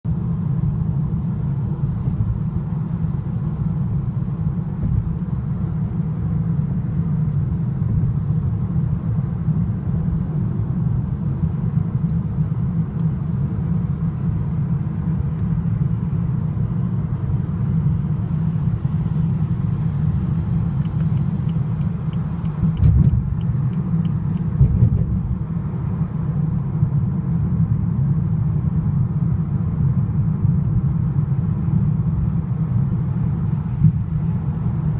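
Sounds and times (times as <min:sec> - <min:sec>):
road and engine rumble: 0:00.0 - 0:34.9.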